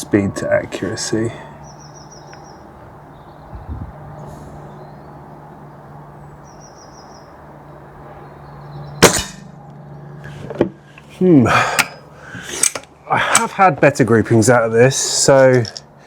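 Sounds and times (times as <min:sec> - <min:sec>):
birds chirping: 0:00.0 - 0:13.4
air rifle shot: 0:09.0 - 0:09.5.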